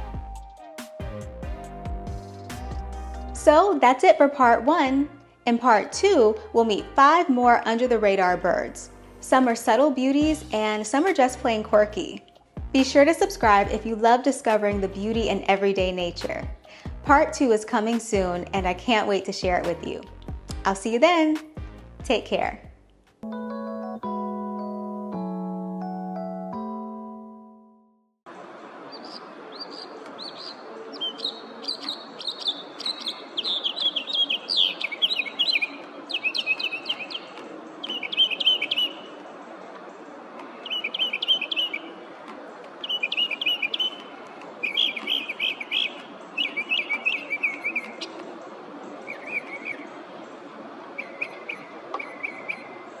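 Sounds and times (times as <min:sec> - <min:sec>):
steady outdoor hiss: 0:28.3 - 0:53.0
songbird singing: 0:28.8 - 0:53.0.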